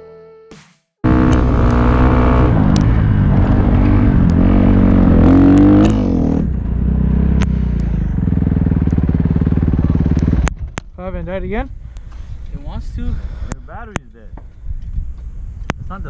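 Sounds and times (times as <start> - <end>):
quad bike engine revving and idling: 1.0 - 11.0.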